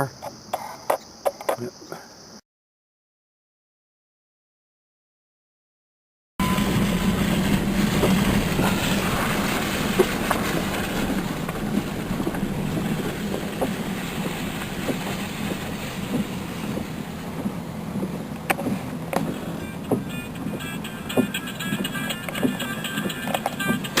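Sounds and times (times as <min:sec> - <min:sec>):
vehicle humming: 0:06.4 - 0:24.0
rattles and clicks: 0:06.6 - 0:24.0.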